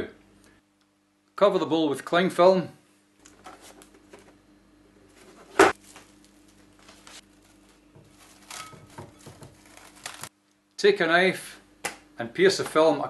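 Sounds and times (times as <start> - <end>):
cling film crinkling: 5.1 - 10.3.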